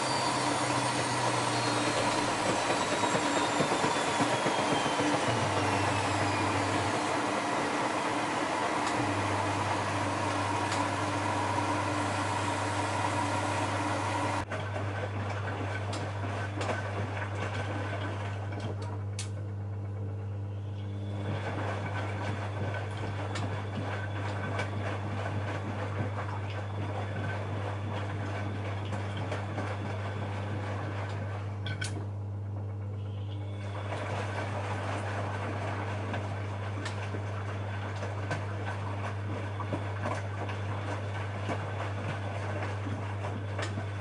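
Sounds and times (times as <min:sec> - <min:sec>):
washing machine low hum: 0:00.0 - 0:44.0
washing machine whirring: 0:00.0 - 0:44.0.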